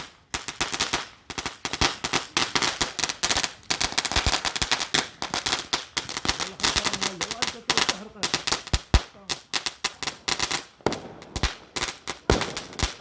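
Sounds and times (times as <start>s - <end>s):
firecrackers banging: 0.0s - 13.0s.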